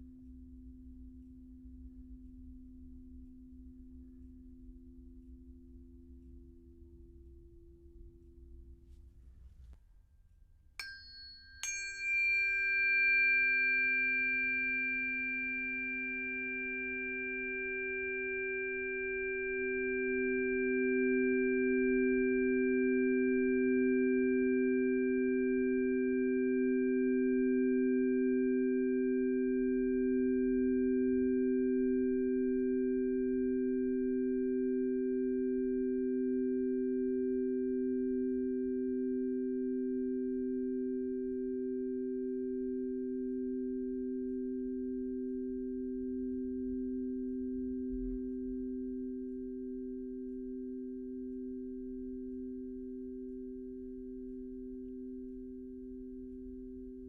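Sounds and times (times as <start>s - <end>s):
tuning forks ringing: 10.8s - 22.1s.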